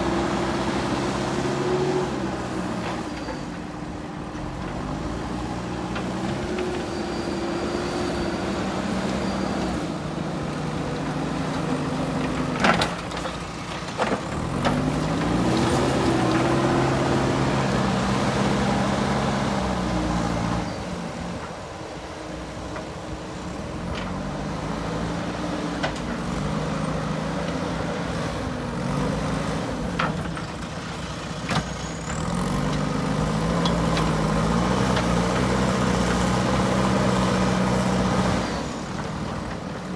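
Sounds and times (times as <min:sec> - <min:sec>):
diesel engine revving: 0:00.0 - 0:03.0, 0:14.1 - 0:21.5, 0:23.5 - 0:39.9.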